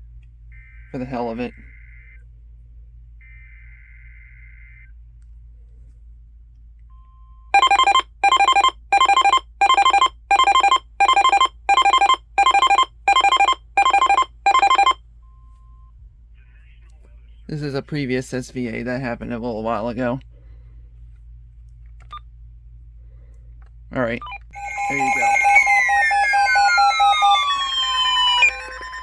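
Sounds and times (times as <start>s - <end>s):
harsh electronic alarm beeps: 0.6s - 2.2s, 7.6s - 15.0s, 24.5s - 29.0s
faint tone: 24.5s - 29.0s.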